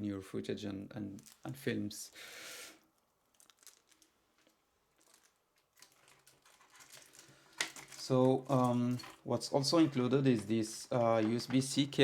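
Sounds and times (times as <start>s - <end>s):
plastic packaging crinkling: 1.2s - 1.6s, 3.2s - 12.0s.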